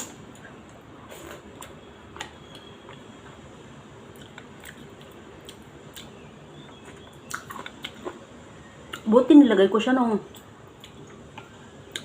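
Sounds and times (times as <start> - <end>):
person chewing: 0.0 - 3.4, 4.0 - 9.0, 10.4 - 12.0.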